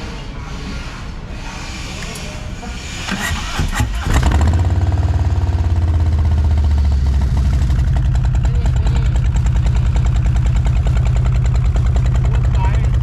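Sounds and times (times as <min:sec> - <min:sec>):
motorcycle engine idling: 0:03.4 - 0:13.0.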